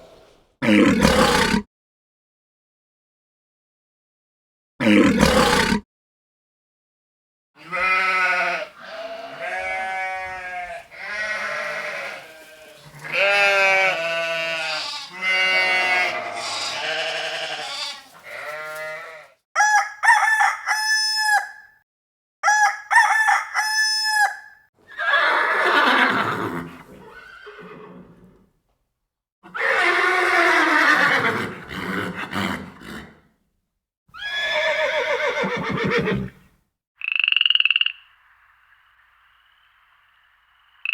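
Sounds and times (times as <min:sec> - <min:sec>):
animal calls: 0:07.7 - 0:19.8.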